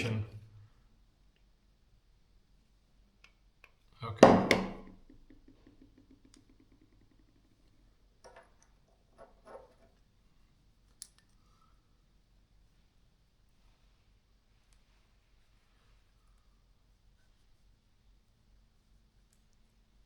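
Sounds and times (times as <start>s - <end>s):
light taps of parts: 4.5s - 10.0s
faint clicks of small parts: 5.3s - 11.8s, 19.0s - 19.9s.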